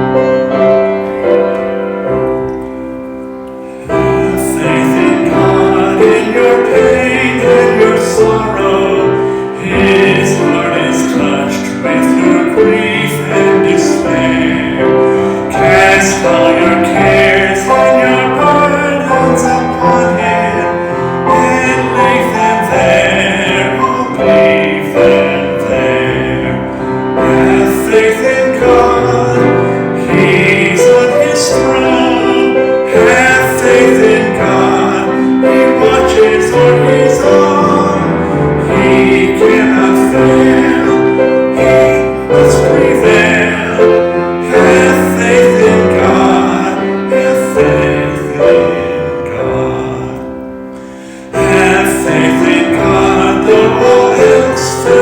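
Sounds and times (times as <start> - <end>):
hymn singing: 0.0 - 55.0
piano accompaniment: 0.0 - 55.0.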